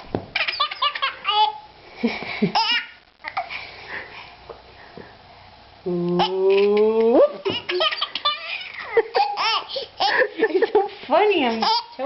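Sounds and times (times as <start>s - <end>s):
child laughing: 0.4s - 3.5s, 6.2s - 10.9s.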